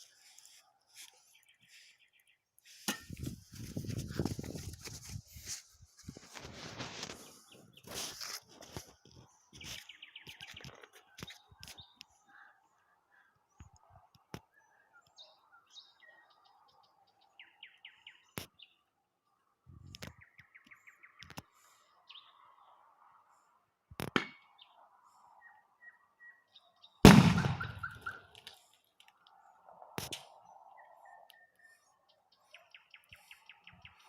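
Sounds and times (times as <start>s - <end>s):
birds chirping: 24.4s - 28.7s, 30.3s - 34.0s
sharp pops: 27.1s - 28.2s.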